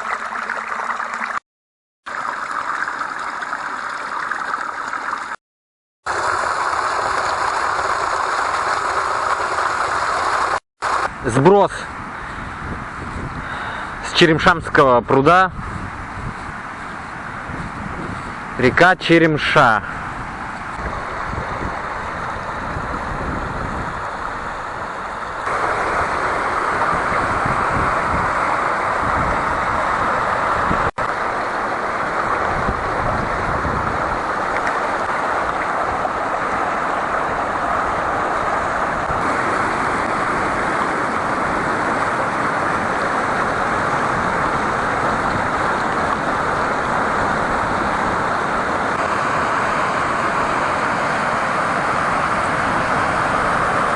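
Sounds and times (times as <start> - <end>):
water rushing over spillway: 6.1 - 11.9, 18.4 - 53.9.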